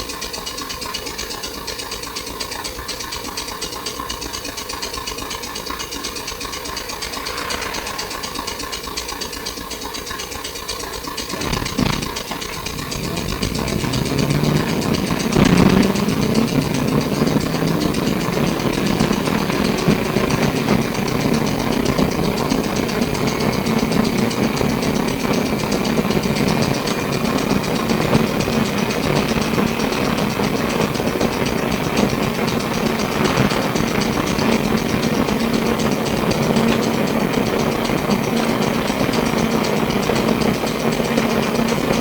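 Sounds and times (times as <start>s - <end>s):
tram running noise: 0.0s - 42.0s
tram whine rising in pitch: 4.4s - 37.7s.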